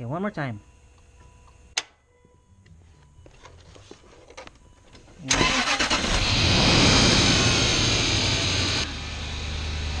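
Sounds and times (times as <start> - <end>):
engine cranking and starting: 5.3 - 8.6.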